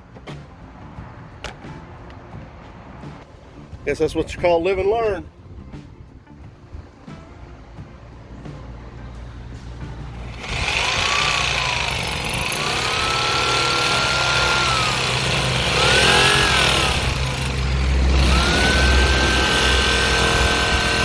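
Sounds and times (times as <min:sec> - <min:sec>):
oscillating multi-tool cutting: 0:10.2 - 0:21.0.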